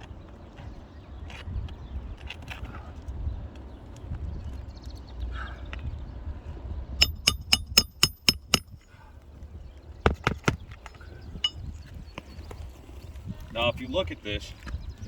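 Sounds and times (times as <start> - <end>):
hammer striking nails: 7.0 - 8.8.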